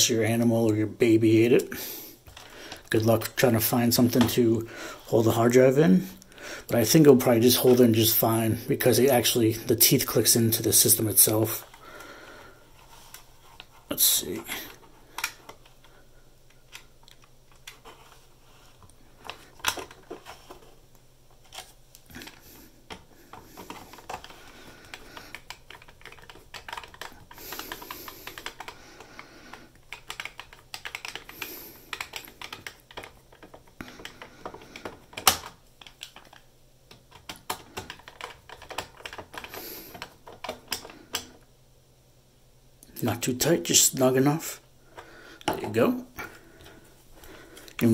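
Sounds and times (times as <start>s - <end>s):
plastic and metal parts clicking: 14.7s - 15.9s, 18.8s - 20.6s, 21.4s - 41.5s.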